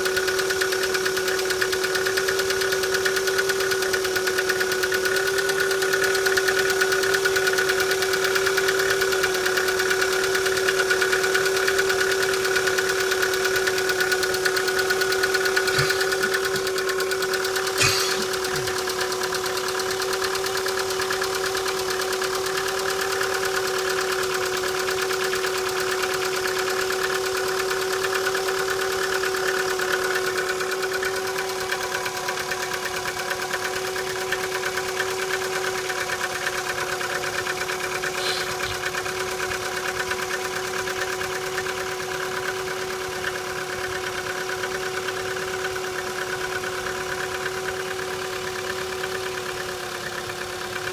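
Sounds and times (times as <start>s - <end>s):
car engine idling with ticking: 0.0s - 50.9s.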